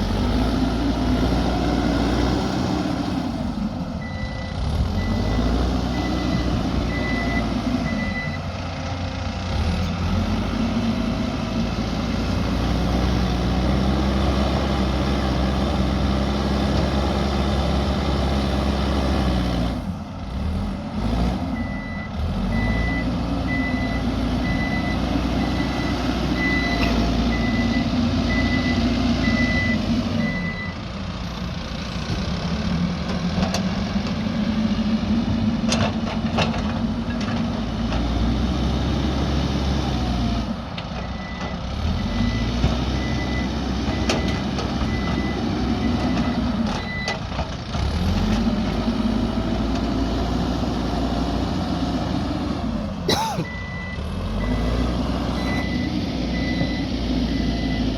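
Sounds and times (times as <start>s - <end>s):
diesel engine working under load: 0.0s - 57.9s
reversing alarm beeping: 4.0s - 8.4s, 21.6s - 30.8s, 41.0s - 47.2s, 53.5s - 57.9s.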